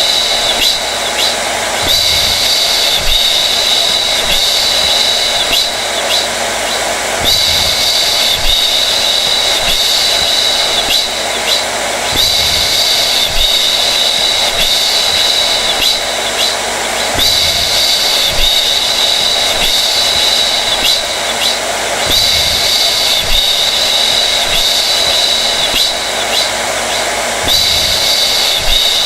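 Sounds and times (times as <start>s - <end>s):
hair dryer rushing air: 0.0s - 29.0s
high fan motor whine: 0.0s - 29.0s.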